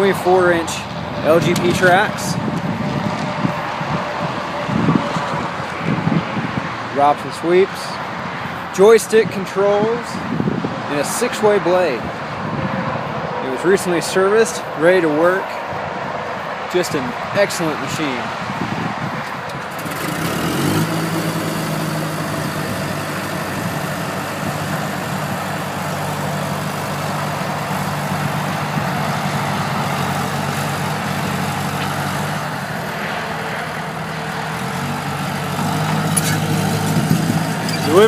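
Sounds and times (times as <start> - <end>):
bulldozer diesel engine running: 19.6 - 38.0.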